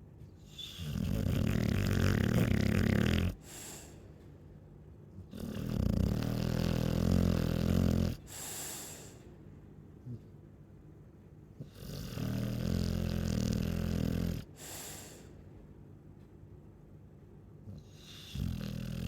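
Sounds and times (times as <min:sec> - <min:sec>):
dog snoring: 0:00.4 - 0:04.0, 0:05.2 - 0:09.2, 0:11.6 - 0:15.3, 0:17.7 - 0:19.0
breathy exhale: 0:08.3 - 0:09.3.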